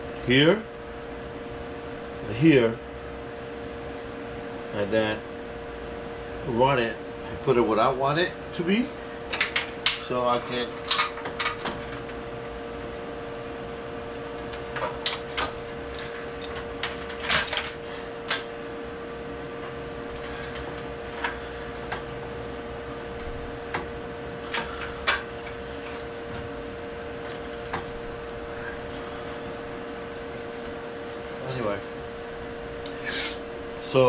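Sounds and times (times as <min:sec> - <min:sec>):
steady hum: 0:00.0 - 0:34.0.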